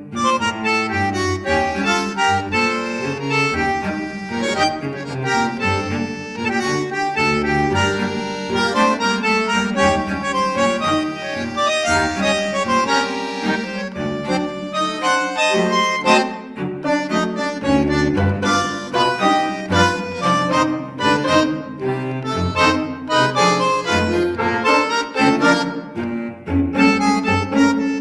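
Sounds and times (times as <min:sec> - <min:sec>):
accordion instrumental music: 0:00.0 - 0:28.0.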